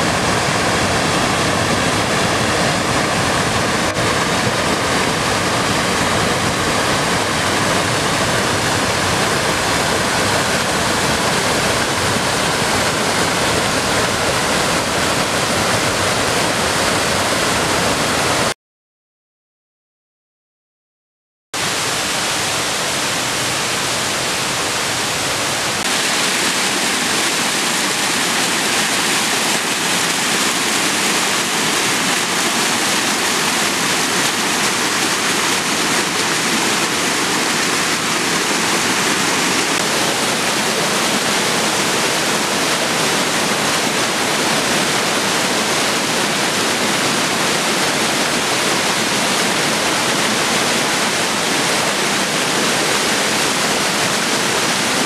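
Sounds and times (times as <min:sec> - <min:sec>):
waterfall rushing: 0:00.0 - 0:18.6, 0:21.6 - 0:55.0.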